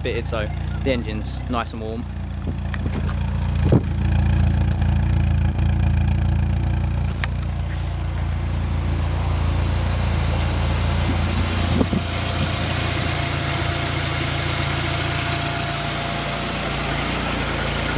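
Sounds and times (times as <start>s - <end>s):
car engine idling: 0.0s - 17.9s.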